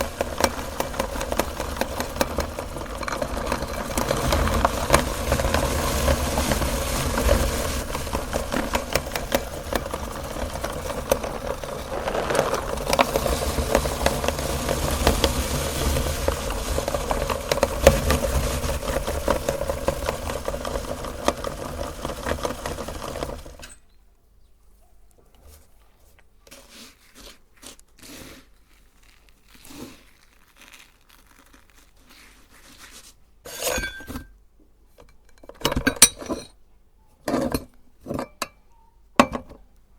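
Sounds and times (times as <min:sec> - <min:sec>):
meat grinder motor humming: 0:00.0 - 0:23.6
cookies crackling in grinder: 0:00.0 - 0:23.8, 0:26.5 - 0:34.2.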